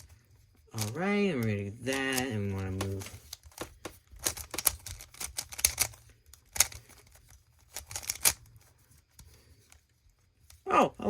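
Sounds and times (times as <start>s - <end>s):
puzzle cube plastic clicks: 0.7s - 10.6s.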